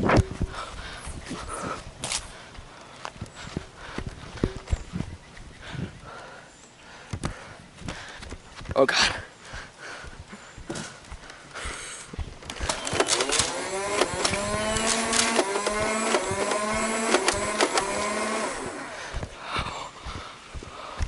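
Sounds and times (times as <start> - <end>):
sharp clicks: 12.4 - 18.7
toy blaster motor whirring: 12.5 - 19.0.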